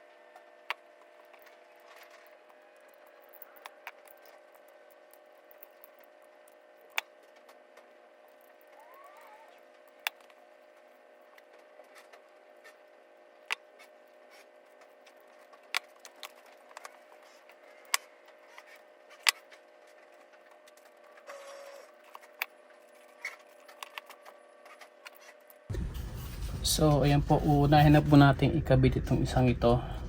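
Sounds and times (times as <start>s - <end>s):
faint steady hum: 0.0s - 30.0s.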